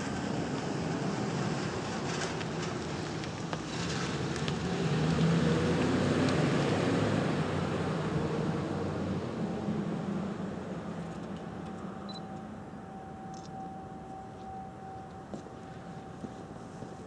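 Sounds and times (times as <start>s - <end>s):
warning siren steady low tone: 11.6s - 17.0s.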